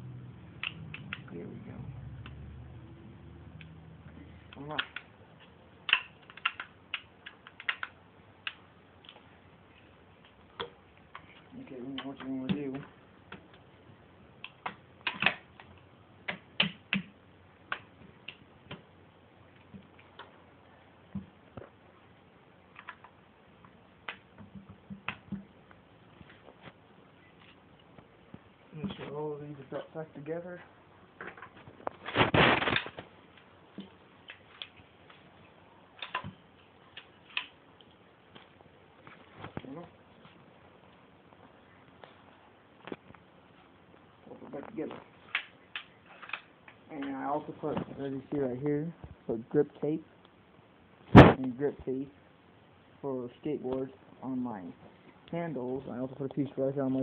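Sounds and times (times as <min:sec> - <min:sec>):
gun parts clicking and knocking: 0:04.5 - 0:09.2, 0:14.4 - 0:17.1, 0:36.0 - 0:37.6, 0:45.3 - 0:47.2.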